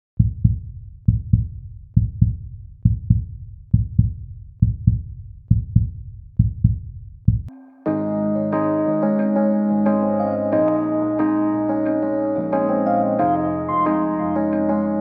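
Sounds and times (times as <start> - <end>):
heartbeat thumps: 0.2 - 7.5.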